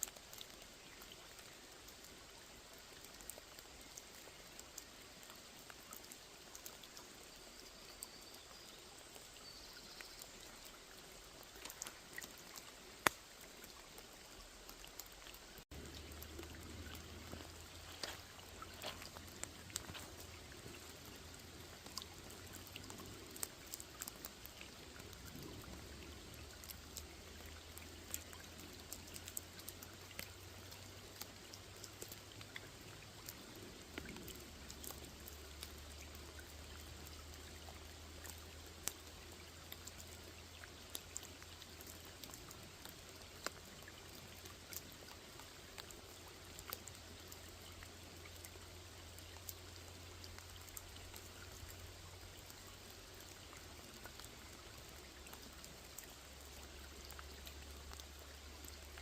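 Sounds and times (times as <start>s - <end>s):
rain falling on a lake: 0.0s - 59.0s
low steady rumble: 15.6s - 39.5s.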